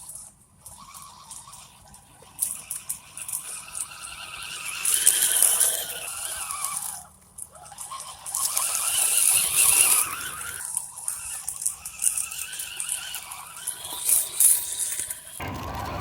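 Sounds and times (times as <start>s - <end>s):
rc car motor whining: 0.0s - 16.0s.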